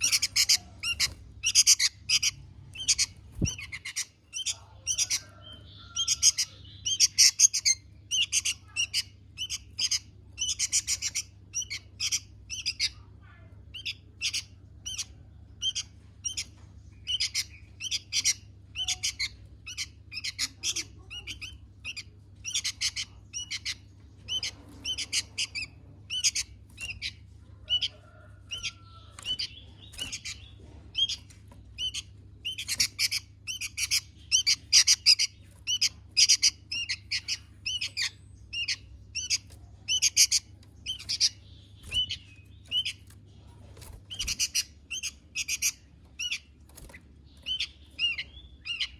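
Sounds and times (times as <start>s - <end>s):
bird chirping: 0.0s - 48.9s.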